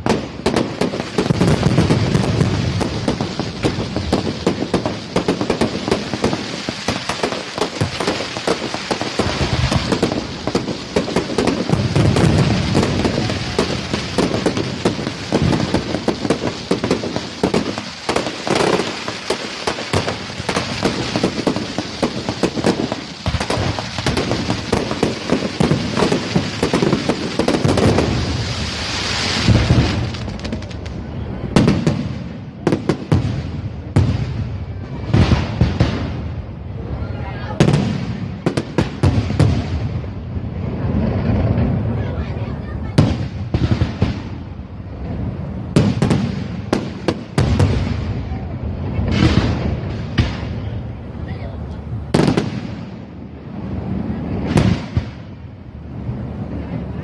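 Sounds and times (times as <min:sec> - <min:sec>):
fireworks crackling and booming: 0:00.0 - 0:57.0.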